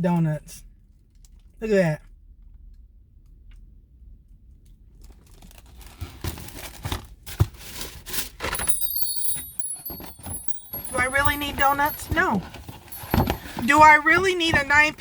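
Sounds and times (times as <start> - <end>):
food packaging rustling: 5.0 - 15.0
high metallic ringing tones: 8.5 - 15.0.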